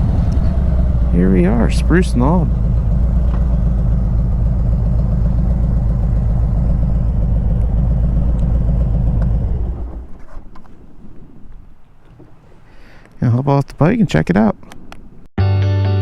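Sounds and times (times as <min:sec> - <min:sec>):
motorcycle engine idling: 0:00.0 - 0:10.2.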